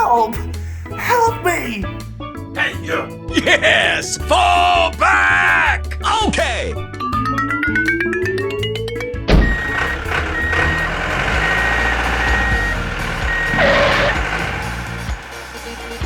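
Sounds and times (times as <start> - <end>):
low engine rumble: 5.8 - 16.0
truck reversing alarm beeping: 6.8 - 16.0
thump: 9.3 - 9.7
short noisy burst: 9.4 - 16.0.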